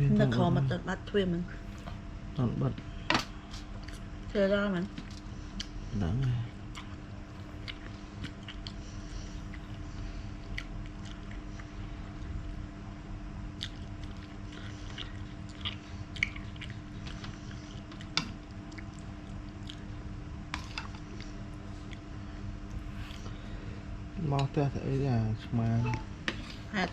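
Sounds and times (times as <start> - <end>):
low electrical hum: 0.0 - 26.9
person chewing crunchy food: 5.0 - 12.6, 13.5 - 23.4.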